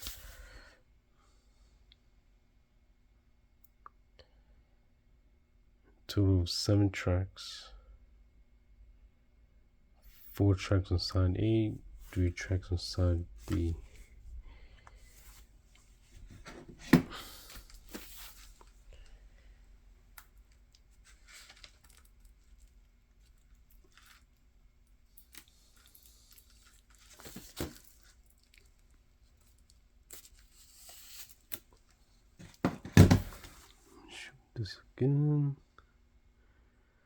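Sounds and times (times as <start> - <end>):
dull thump: 16.3 - 17.3, 32.5 - 33.6.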